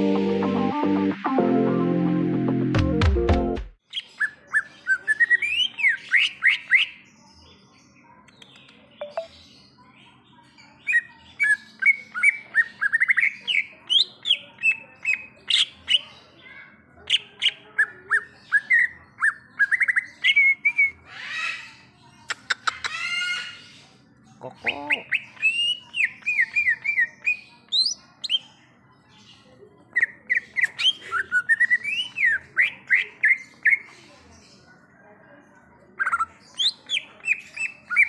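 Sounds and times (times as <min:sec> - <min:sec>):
bird chirping and whistling: 0:30.6 - 0:33.8.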